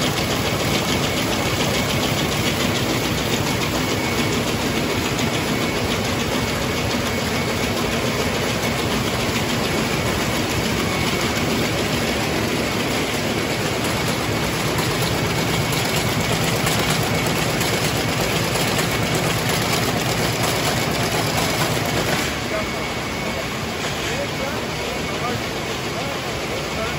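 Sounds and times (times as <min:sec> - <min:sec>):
weaving looms clattering: 0:00.0 - 0:22.7.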